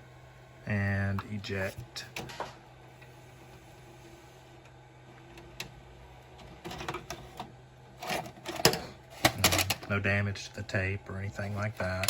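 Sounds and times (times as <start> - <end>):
low steady hum: 0.0 - 12.0
tape deck mechanism clicks and clunks: 6.4 - 10.0.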